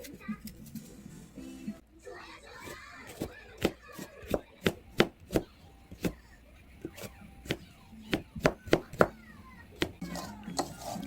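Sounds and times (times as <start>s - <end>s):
knife chopping on cutting board: 3.1s - 6.2s.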